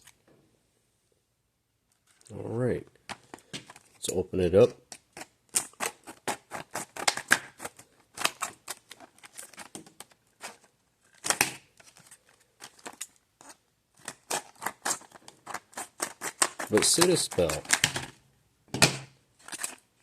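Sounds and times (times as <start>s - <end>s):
scissors cutting packaging: 4.9s - 18.1s, 19.4s - 19.8s.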